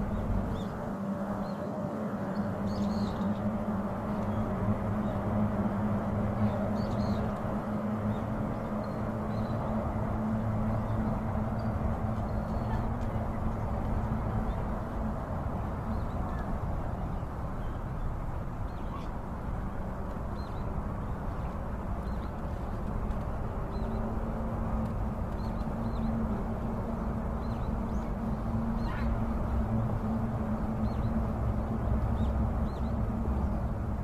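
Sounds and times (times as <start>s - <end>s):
low outdoor rumble and hum: 0.0s - 34.0s
faint high bird calls: 28.7s - 29.2s.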